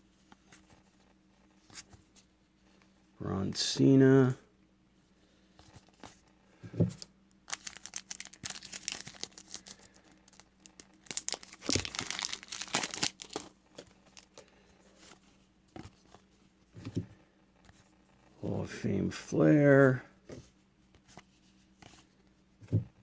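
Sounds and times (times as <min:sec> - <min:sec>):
plastic wrapper crinkling: 0:07.4 - 0:14.5.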